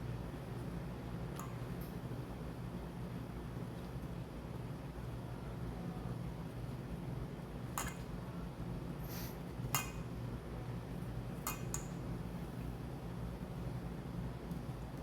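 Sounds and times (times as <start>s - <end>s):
scrape or hiss: 9.0s - 9.4s.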